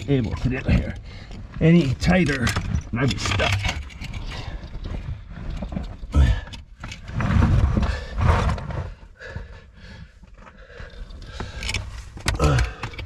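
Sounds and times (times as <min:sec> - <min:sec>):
gear scraping against rock: 0:00.0 - 0:09.4, 0:10.3 - 0:13.0
man grunting and straining: 0:06.1 - 0:06.6, 0:12.2 - 0:13.0.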